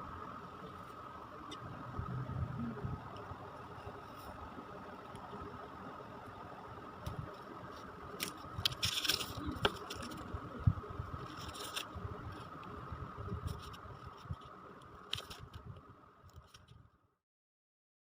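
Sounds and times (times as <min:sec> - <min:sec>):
faint steady whine: 0:00.0 - 0:17.2
objects scraping and rustling: 0:07.1 - 0:10.5, 0:11.2 - 0:12.8, 0:13.4 - 0:15.7.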